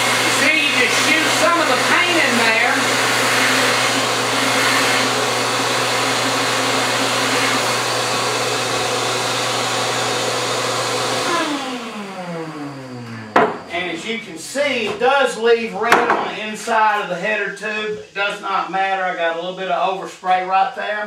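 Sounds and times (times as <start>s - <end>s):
shop vacuum running: 0.0s - 16.3s.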